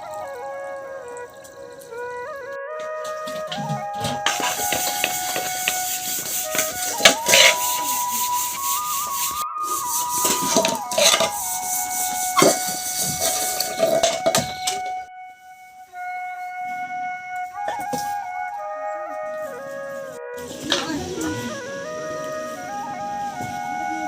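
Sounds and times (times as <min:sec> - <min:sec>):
slow melody music: 0:00.0 - 0:24.0.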